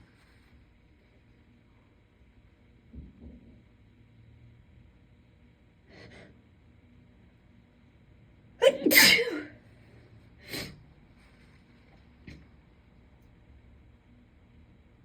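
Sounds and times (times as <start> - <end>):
woman sneezing: 8.6 - 9.6.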